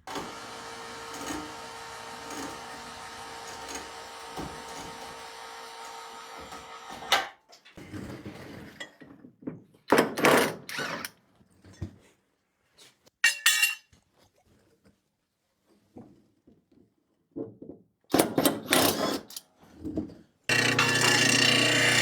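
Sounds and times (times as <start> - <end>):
motor hum: 0.1 - 6.9, 20.5 - 22.0.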